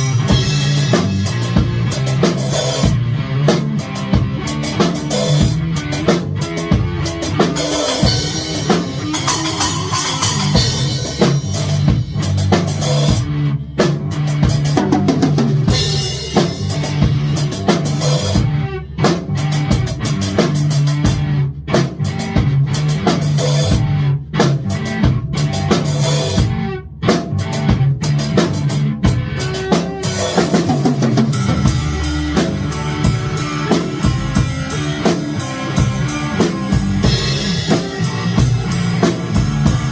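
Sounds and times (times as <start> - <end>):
drum kit beat: 0.0 - 39.9
sustained pitched music parts: 5.6 - 12.8.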